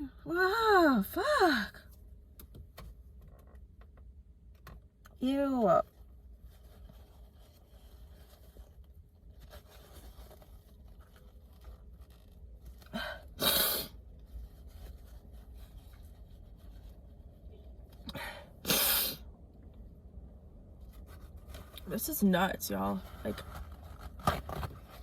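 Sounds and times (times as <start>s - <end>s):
woman sneezing: 18.6s - 19.2s.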